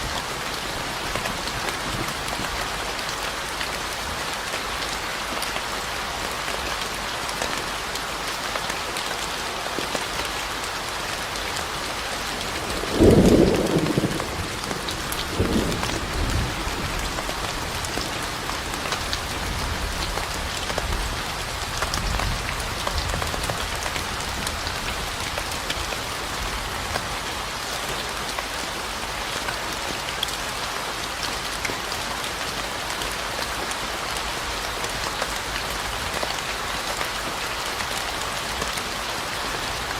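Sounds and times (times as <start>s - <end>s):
steady rain falling: 0.0s - 39.9s
thunder rumble: 12.6s - 18.0s.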